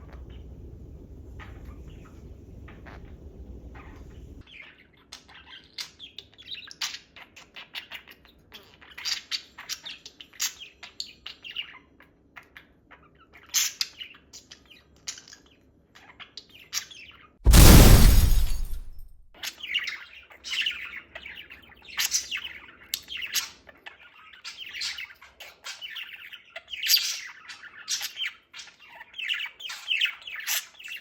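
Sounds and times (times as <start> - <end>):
sudden loud burst of noise: 17.5 - 19.2.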